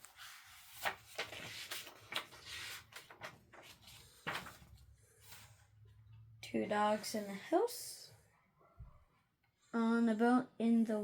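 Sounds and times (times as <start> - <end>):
book pages rustling: 0.0 - 5.7.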